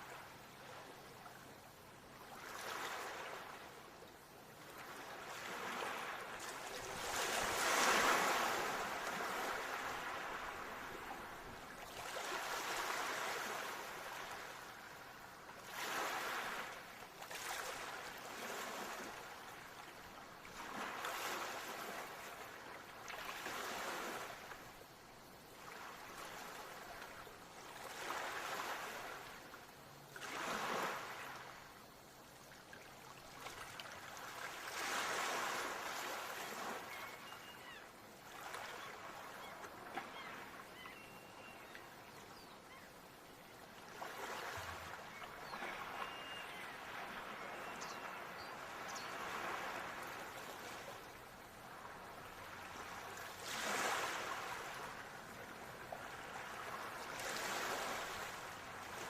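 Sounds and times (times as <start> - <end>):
faint high chirps: 45.0 - 49.2.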